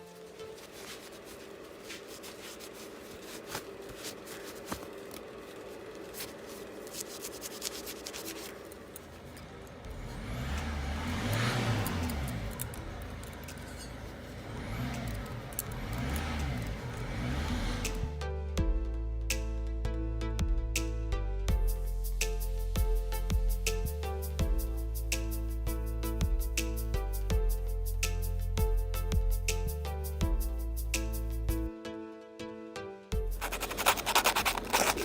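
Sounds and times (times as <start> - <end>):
motor speeding up and slowing: 9.8 - 13.3
metallic clicks and scraping: 11.8 - 17.1, 33.4 - 35.0.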